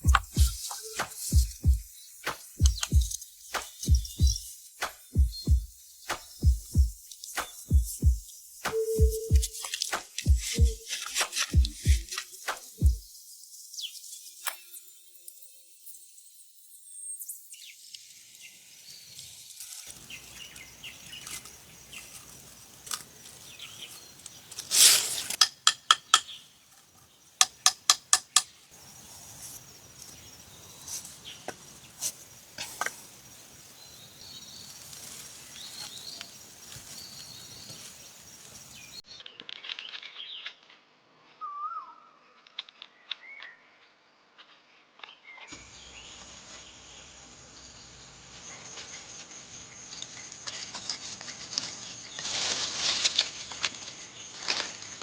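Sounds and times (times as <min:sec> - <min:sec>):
birds chirping: 0:00.0 - 0:14.0, 0:19.9 - 0:39.0
sharp knocks on metal: 0:27.4 - 0:28.5.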